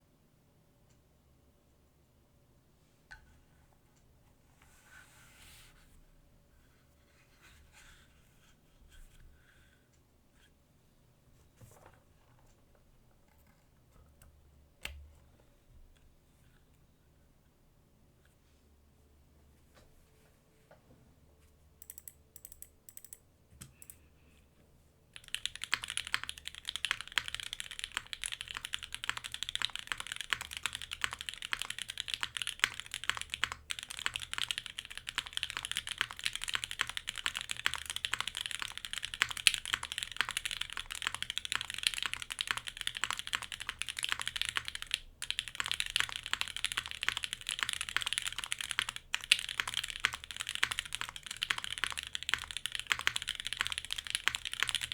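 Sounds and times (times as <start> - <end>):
typing on mechanical keyboard: 21.8 - 23.2, 25.2 - 54.9.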